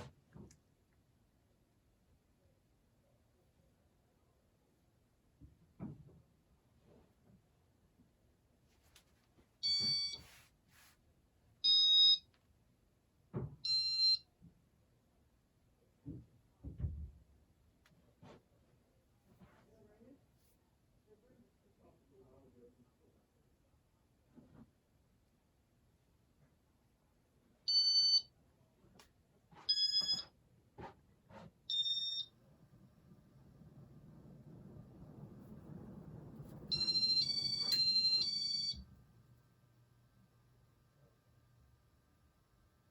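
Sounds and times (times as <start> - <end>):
fan motor hum: 31.7 - 42.9
electronic beeps: 36.7 - 38.9.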